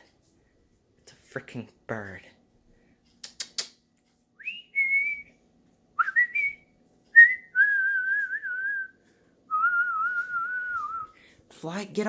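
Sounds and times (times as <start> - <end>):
person whistling: 4.4 - 5.3, 6.0 - 11.2.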